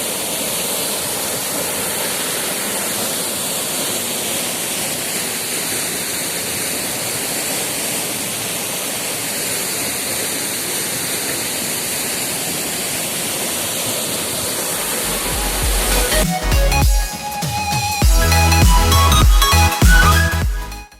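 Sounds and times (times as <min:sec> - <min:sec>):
waterfall roaring: 0:00.0 - 0:16.2
deep bass: 0:15.0 - 0:16.9, 0:18.0 - 0:20.9.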